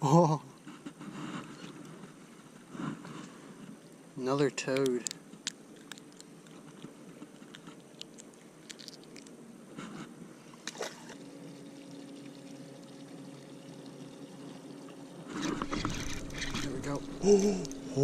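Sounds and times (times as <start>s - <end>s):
faint steady hum: 0.0s - 18.0s
small clicks and knocks: 4.7s - 9.4s
faint trickling water: 10.6s - 18.0s.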